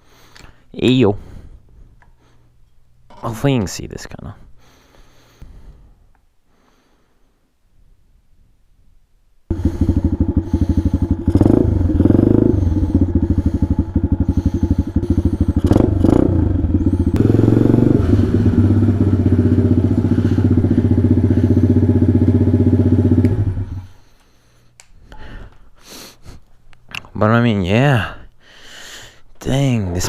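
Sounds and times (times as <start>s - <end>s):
motorbike engine idling and revving: 9.5s - 24.1s.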